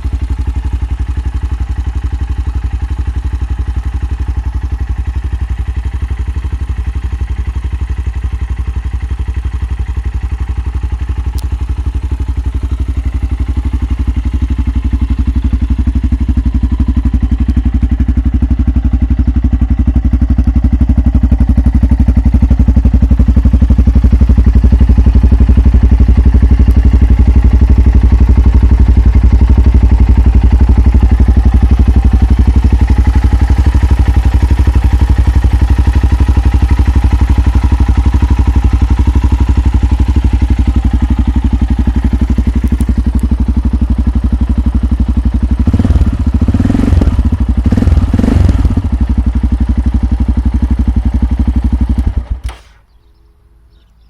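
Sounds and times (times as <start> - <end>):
motorcycle engine idling and revving: 0.0 - 54.0.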